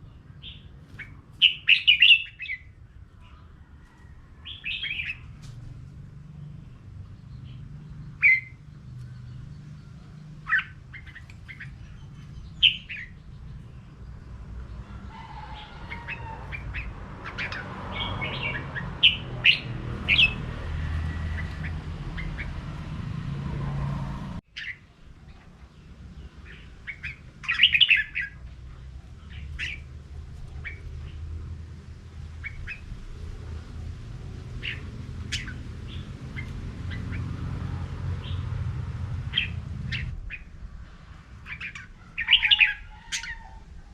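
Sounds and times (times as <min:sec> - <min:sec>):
birds whistling: 0:00.0 - 0:02.8, 0:04.4 - 0:05.4, 0:07.1 - 0:13.9, 0:14.8 - 0:22.9, 0:24.5 - 0:24.9, 0:26.4 - 0:28.4, 0:29.2 - 0:31.2, 0:32.4 - 0:33.0, 0:34.6 - 0:37.4, 0:39.3 - 0:40.6, 0:41.4 - 0:43.8
steady low rumble: 0:28.5 - 0:42.0.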